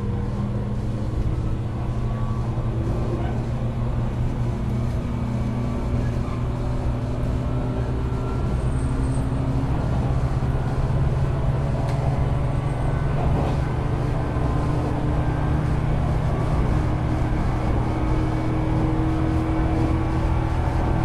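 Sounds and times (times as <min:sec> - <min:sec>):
wheel and rail noise: 0:00.0 - 0:21.0.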